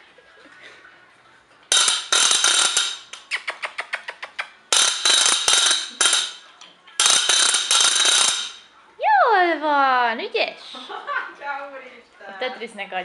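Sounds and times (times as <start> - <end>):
harsh loud rattling: 1.7 - 3.1, 4.7 - 8.7.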